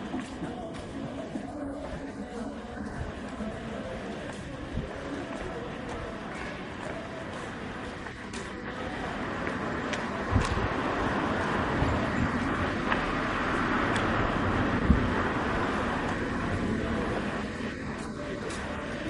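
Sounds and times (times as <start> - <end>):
vehicle passing slowly: 8.7 - 19.0.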